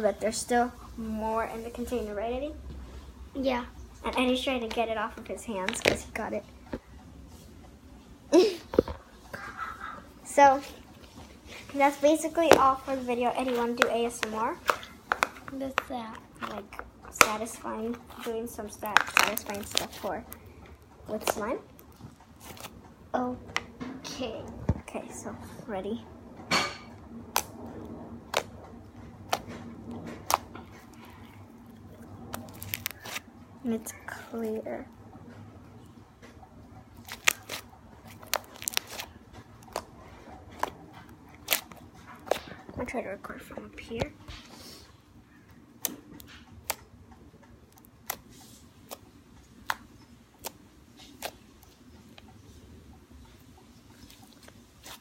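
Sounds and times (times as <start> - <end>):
slime squished by hand: 30.2 - 33.3, 36.9 - 42.7.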